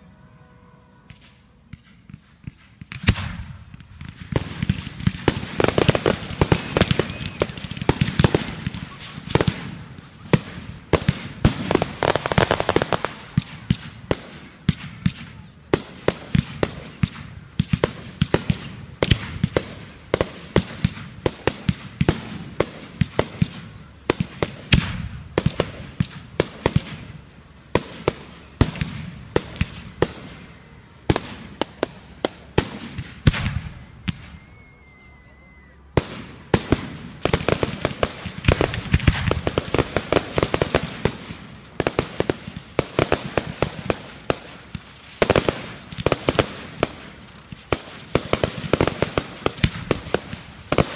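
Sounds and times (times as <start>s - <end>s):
fireworks bangs and crackles: 1.1s - 50.9s
faint thin whistling tone: 34.0s - 35.8s.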